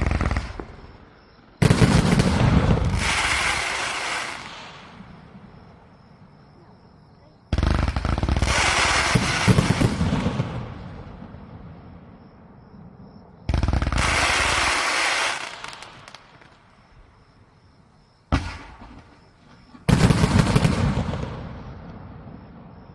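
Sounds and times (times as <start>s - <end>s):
fireworks bangs: 0.0s - 5.9s, 7.5s - 12.0s, 13.5s - 16.7s, 18.3s - 22.8s
fireworks crackle: 1.6s - 5.1s, 7.6s - 11.0s, 13.8s - 16.7s, 18.4s - 21.6s.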